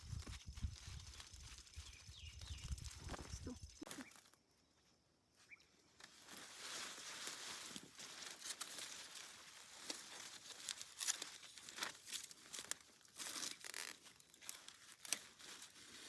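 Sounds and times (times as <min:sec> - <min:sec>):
plants and twine rustling: 0:00.0 - 0:04.4, 0:05.4 - 0:16.0
sharp snaps and crackles: 0:07.7 - 0:15.7.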